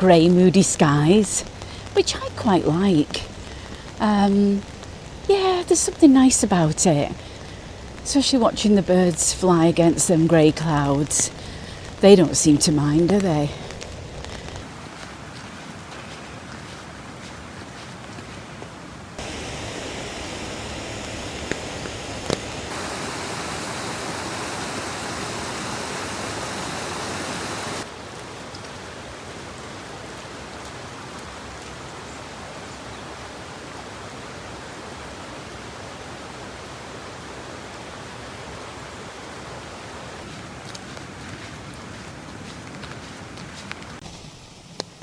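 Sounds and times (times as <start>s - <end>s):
small river rushing: 14.6s - 44.1s.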